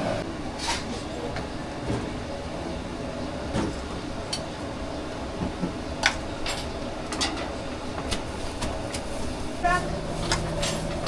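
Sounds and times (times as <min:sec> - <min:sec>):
busy restaurant rumble: 0:00.0 - 0:11.0
utensils and dishes clinking: 0:06.0 - 0:07.6, 0:09.6 - 0:11.0.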